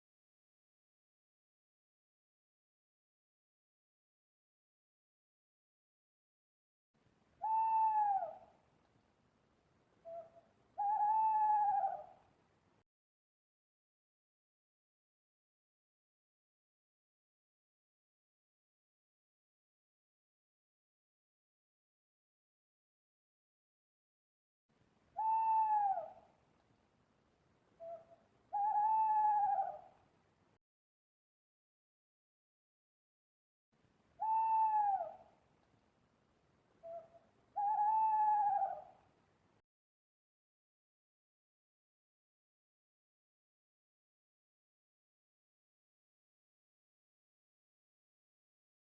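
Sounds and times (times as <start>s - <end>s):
owl hooting: 7.4s - 8.5s, 10.0s - 12.2s, 25.2s - 26.3s, 27.8s - 30.0s, 34.2s - 35.4s, 36.8s - 39.0s.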